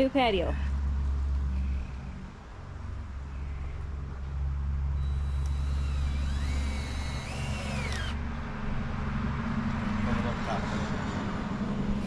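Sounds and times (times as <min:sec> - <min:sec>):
motor humming: 0:05.0 - 0:08.2.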